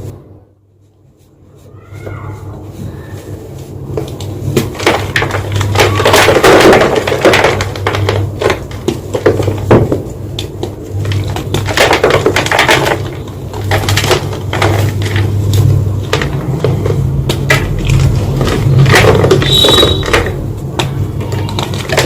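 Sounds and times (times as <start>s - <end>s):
chalk crunching: 0.7s - 6.0s.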